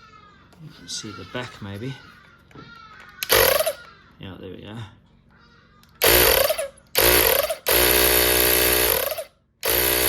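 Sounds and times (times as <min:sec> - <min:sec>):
electric compressor motor buzzing: 0:03.2 - 0:03.8, 0:06.0 - 0:10.0.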